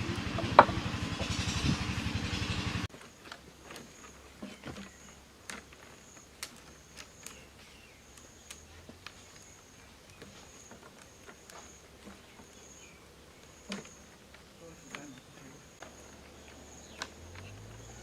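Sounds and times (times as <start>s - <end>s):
insect chirping: 4.8s - 18.0s.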